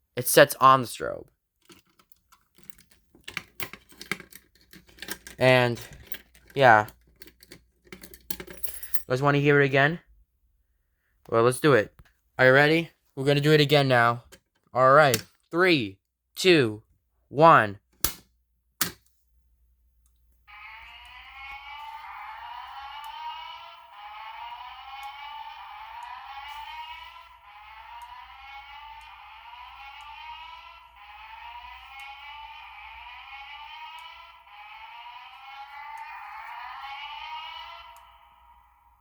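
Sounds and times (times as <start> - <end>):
fire alarm rising sweeps: 20.5 - 39.0.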